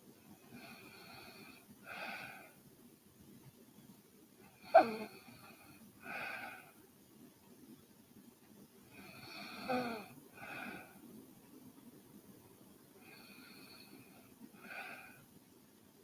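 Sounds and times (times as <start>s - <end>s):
woman snoring: 4.6s - 6.7s, 9.0s - 10.9s.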